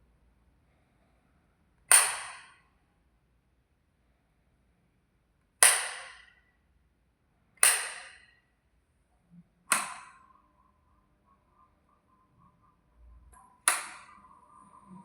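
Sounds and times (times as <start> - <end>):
faint steady tone: 6.2 - 15.0.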